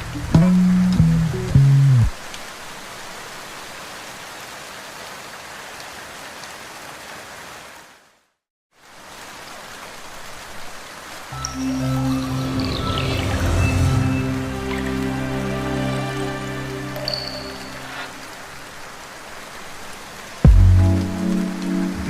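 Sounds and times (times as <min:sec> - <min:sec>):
music: 0:00.0 - 0:02.1, 0:11.4 - 0:18.3, 0:20.5 - 0:22.0
steady rain falling: 0:00.0 - 0:22.0.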